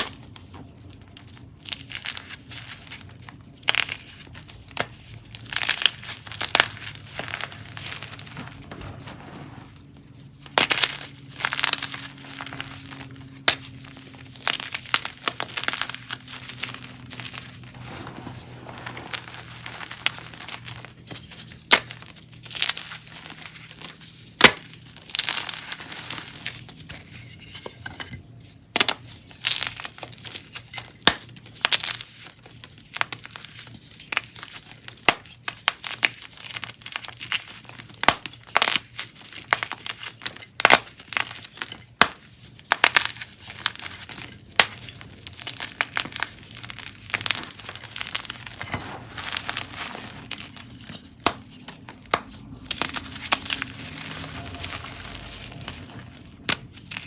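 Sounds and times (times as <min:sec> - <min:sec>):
chalk crunching and snapping: 0:37.7 - 0:57.0.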